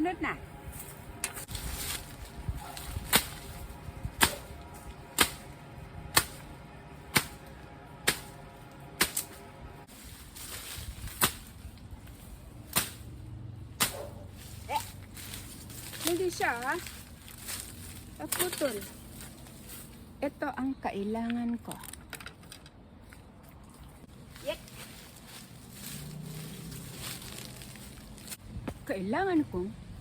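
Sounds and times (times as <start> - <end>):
knife chopping tree trunk: 3.0 - 3.6, 4.2 - 6.4.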